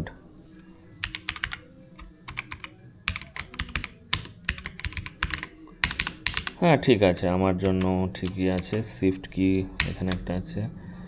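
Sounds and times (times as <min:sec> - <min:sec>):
mechanical keyboard clicking: 0:01.0 - 0:06.6, 0:07.6 - 0:08.9, 0:09.8 - 0:10.2.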